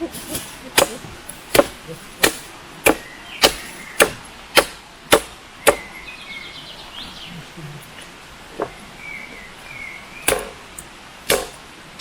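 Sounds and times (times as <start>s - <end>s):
chopping strikes: 0.2s - 5.9s, 10.3s - 11.6s.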